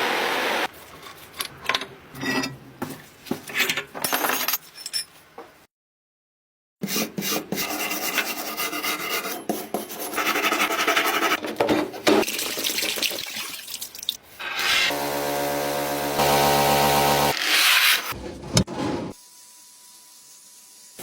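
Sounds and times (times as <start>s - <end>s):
power tool motor hum: 14.9s - 17.4s.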